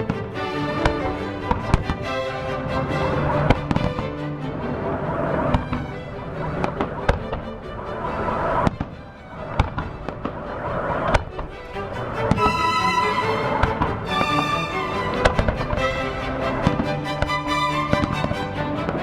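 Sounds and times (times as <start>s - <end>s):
music playing: 12.3s - 19.0s.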